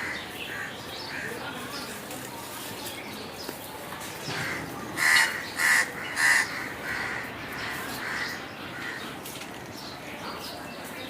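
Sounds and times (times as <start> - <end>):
crow cawing: 0.0 - 1.3, 4.4 - 9.1.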